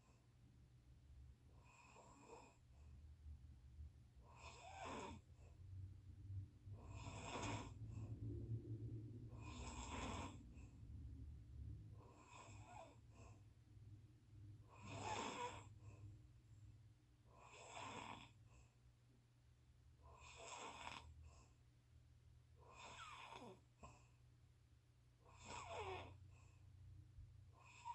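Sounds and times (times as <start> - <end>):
person snoring: 6.8 - 7.9, 9.3 - 10.4, 14.7 - 15.7.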